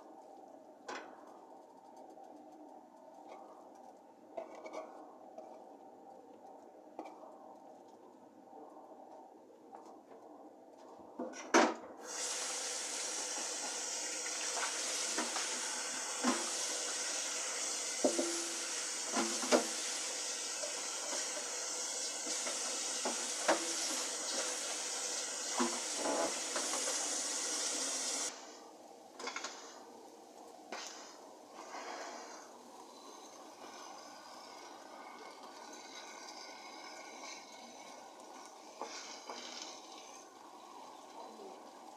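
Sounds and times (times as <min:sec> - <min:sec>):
tap water running into sink: 0:12.0 - 0:28.3.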